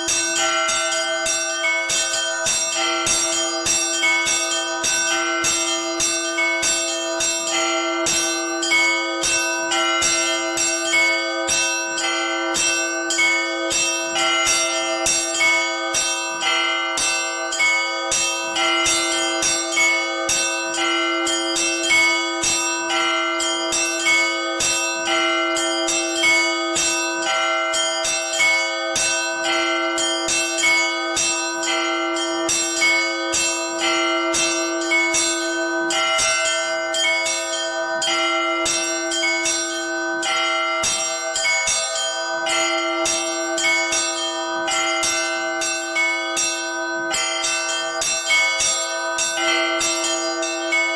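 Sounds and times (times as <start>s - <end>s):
low bell ringing: 0.0s - 50.9s
small high bells struck rhythmically: 0.0s - 50.9s.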